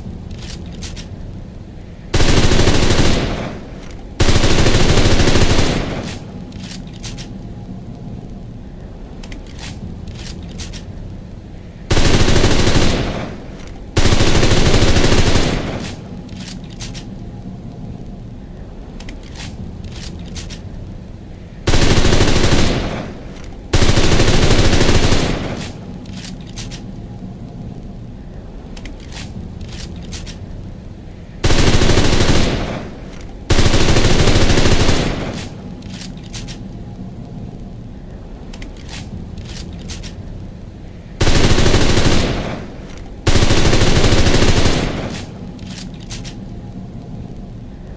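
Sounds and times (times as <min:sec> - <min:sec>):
submachine gun automatic fire: 0:02.2 - 0:03.6, 0:04.2 - 0:06.2, 0:11.9 - 0:13.4, 0:14.0 - 0:16.0, 0:21.7 - 0:23.1, 0:23.8 - 0:25.7, 0:31.4 - 0:32.9, 0:33.5 - 0:35.5, 0:41.2 - 0:42.7, 0:43.3 - 0:45.3
faint scattered cracks: 0:05.5 - 0:11.2, 0:15.4 - 0:21.0, 0:25.2 - 0:28.1, 0:35.0 - 0:41.4, 0:44.3 - 0:47.9.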